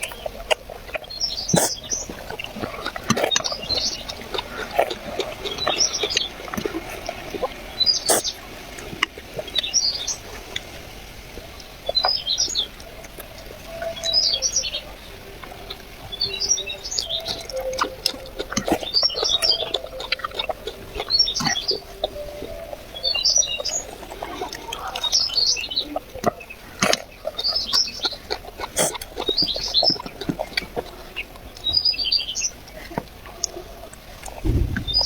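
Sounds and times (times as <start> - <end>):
bird chirping: 13.7 - 24.2, 34.4 - 35.0.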